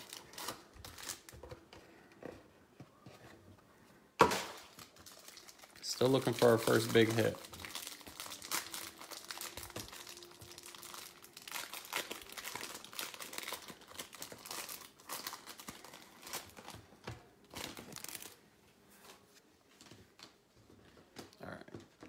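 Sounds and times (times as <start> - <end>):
card pack wrappers crinkling: 0.0 - 1.6, 4.2 - 18.4.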